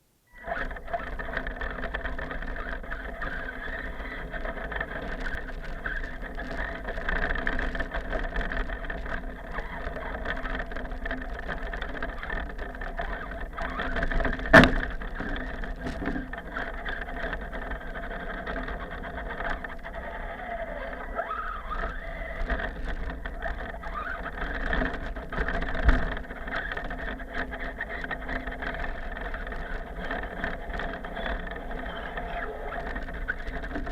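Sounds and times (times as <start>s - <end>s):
toy car motor whining: 0.3s - 33.9s
low thump: 14.4s - 15.0s.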